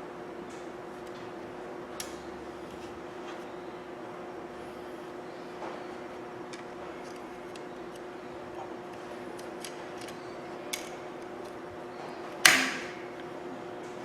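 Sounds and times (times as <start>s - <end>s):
faint steady hum: 0.0s - 14.0s
small parts clicking and tapping: 6.4s - 8.1s, 8.9s - 11.6s
sharp snap: 12.4s - 13.0s.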